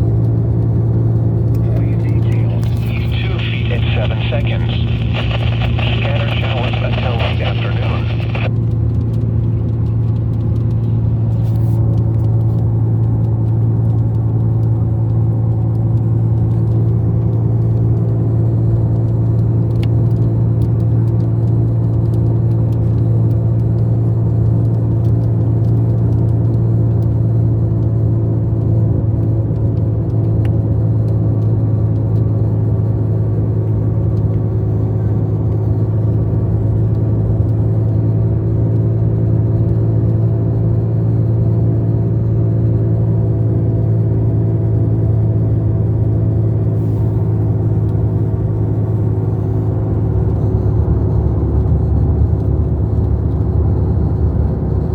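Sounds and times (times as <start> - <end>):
loud steady low hum: 1.4 - 8.5.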